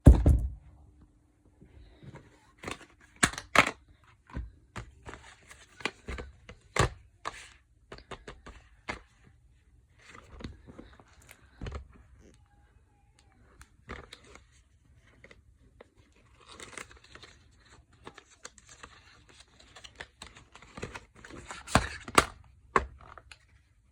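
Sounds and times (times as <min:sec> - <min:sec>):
packaging crinkling and tearing: 0:16.1 - 0:22.3.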